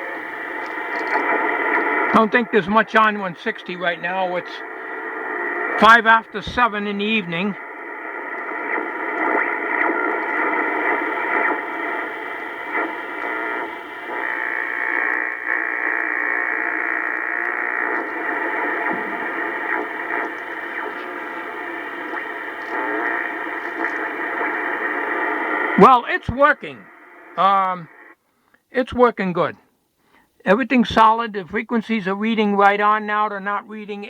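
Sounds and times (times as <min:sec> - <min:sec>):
radio static hiss: 0:00.0 - 0:29.6, 0:30.2 - 0:34.0.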